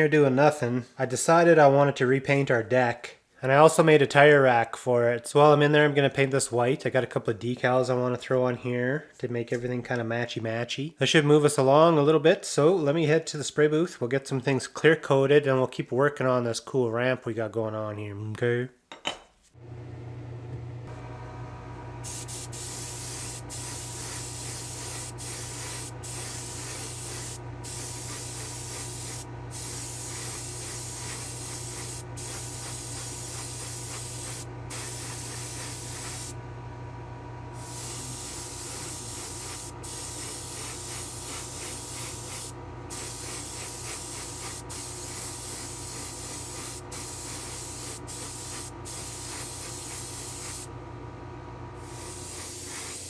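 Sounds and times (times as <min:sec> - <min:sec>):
airbrush spraying hiss: 0:22.0 - 0:36.4, 0:37.6 - 0:50.7, 0:51.8 - 0:53.0.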